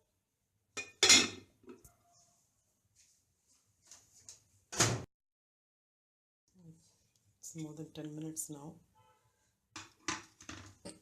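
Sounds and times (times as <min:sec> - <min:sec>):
kitchenware knocking and clinking: 0:00.8 - 0:01.8, 0:09.8 - 0:11.0.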